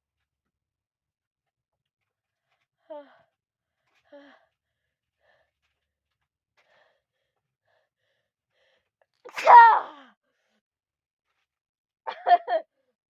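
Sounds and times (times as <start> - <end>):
woman sneezing: 9.3 - 9.8.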